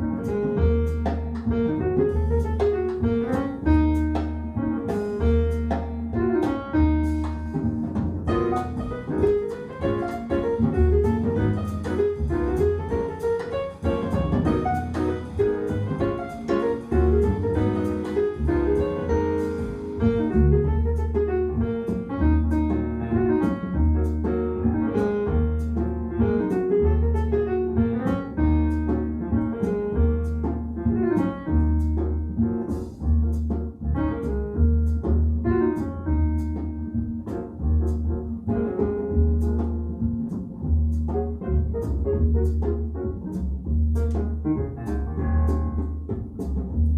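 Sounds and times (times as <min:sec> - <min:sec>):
double bass notes: 0:00.0 - 0:46.9
jazz piano: 0:00.0 - 0:46.9.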